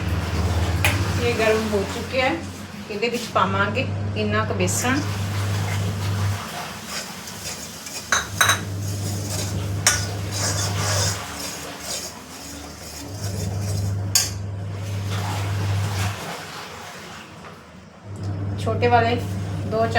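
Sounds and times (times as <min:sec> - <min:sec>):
metal spoon scraping in pan: 0:06.7 - 0:14.4
spoon clinking against pan: 0:08.1 - 0:08.7.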